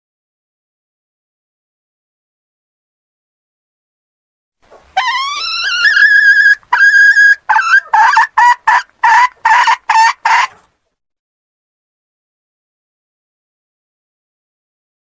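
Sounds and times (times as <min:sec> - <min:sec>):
hen cackling and clucking: 0:04.7 - 0:10.7.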